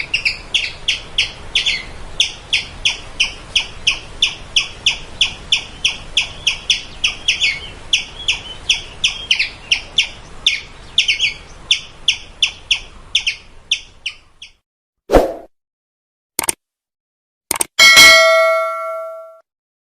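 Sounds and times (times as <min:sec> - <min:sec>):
squirrel calling: 0:00.0 - 0:14.6.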